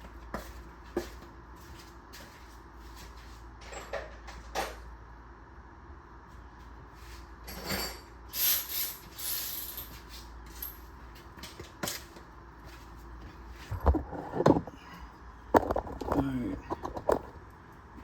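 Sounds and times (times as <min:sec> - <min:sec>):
metal tools scraping and knocking: 0:07.5 - 0:08.1.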